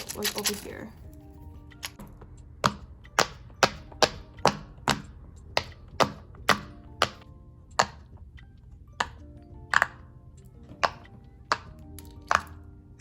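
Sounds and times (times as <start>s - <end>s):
faint background music: 0.0s - 13.0s.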